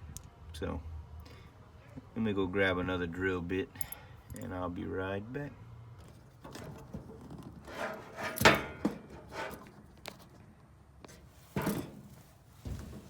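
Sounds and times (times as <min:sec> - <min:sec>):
objects knocking and clunking: 0:06.0 - 0:10.5, 0:11.1 - 0:13.0.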